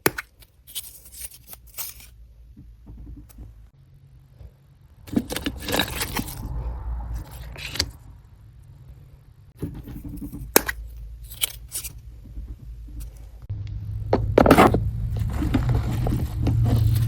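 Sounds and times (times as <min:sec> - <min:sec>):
low steady hum: 0:00.0 - 0:17.0
objects rustling: 0:05.0 - 0:06.6, 0:14.5 - 0:17.0.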